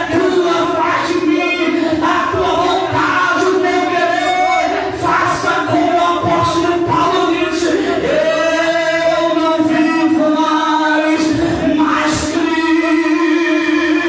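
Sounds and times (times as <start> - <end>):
worship singing with music: 0.0 - 14.0.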